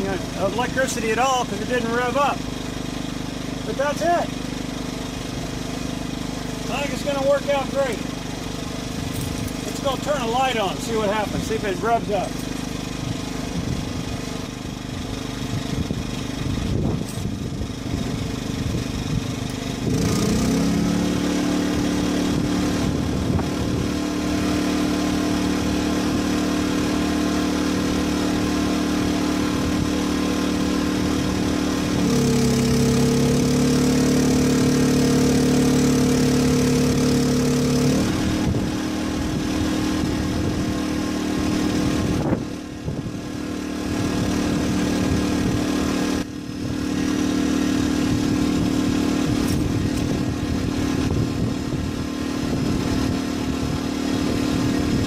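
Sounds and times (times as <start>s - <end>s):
generator engine running: 0.0s - 55.0s.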